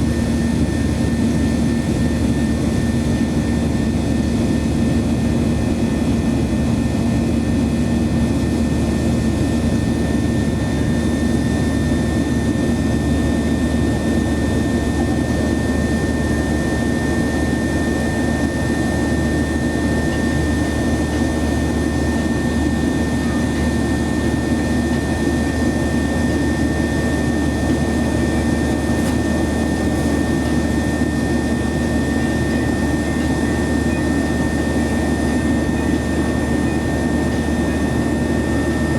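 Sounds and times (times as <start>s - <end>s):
jet cabin engine drone: 0.0s - 38.9s.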